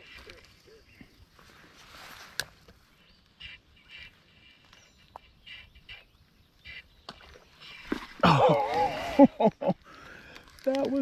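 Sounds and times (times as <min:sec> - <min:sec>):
bird calling: 0:02.8 - 0:10.4.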